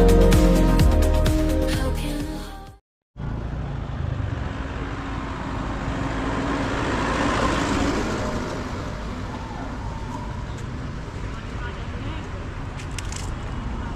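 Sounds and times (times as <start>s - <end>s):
road traffic rumble: 3.2s - 13.9s.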